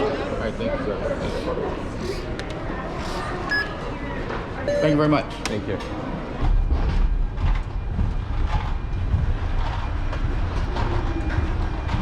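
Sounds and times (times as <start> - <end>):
knocks and clatter of footsteps: 5.4 - 12.0
steady low rumble: 6.3 - 12.0.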